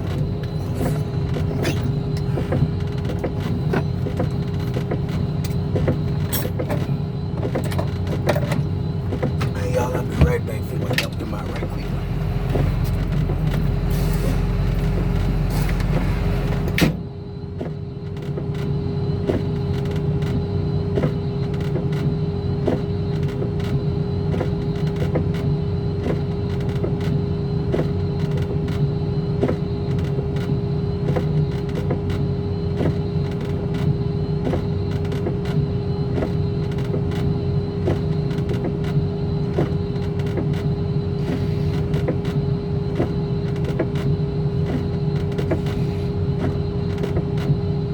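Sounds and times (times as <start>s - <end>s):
diesel engine running: 0.0s - 18.0s
cab door clunk: 14.8s - 17.1s.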